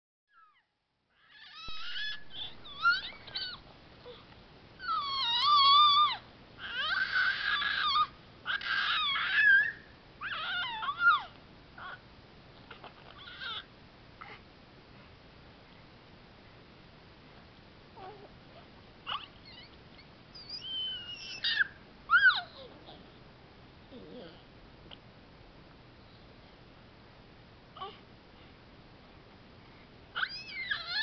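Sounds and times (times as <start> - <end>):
baby squealing: 1.2 - 4.2, 4.8 - 12.0, 20.4 - 22.7, 30.2 - 31.0.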